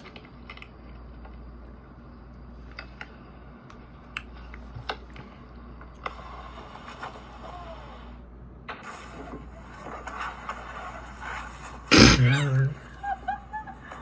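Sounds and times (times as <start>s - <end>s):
low hum and hiss: 0.0s - 8.7s, 11.9s - 14.0s.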